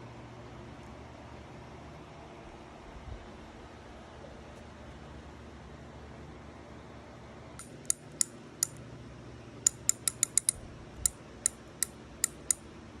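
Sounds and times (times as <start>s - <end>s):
fishing reel clicking: 9.7s - 10.6s.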